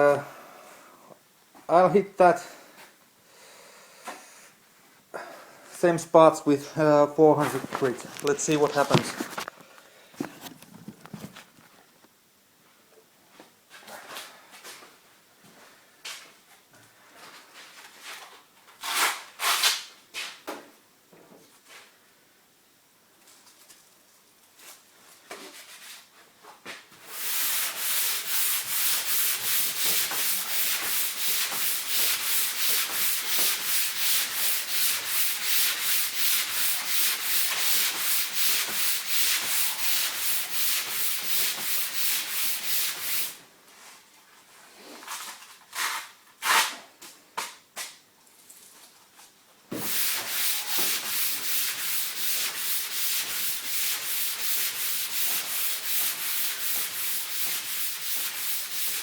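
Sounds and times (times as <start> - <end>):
sandpaper rubbing on primer: 27.0 - 43.4, 49.7 - 59.0.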